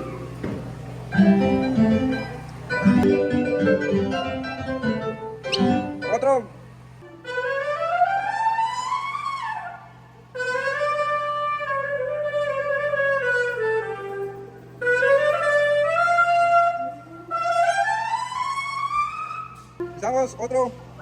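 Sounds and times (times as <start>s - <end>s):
low mains hum: 0.0s - 21.0s
wind instrument through a pa: 7.0s - 20.1s.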